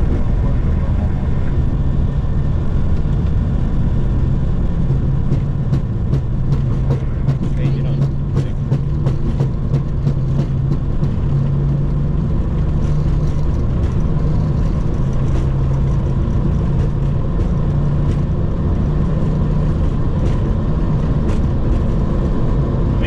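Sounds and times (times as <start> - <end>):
jet engines low hum: 0.0 - 23.0
wheels knocking on runway: 0.0 - 23.0.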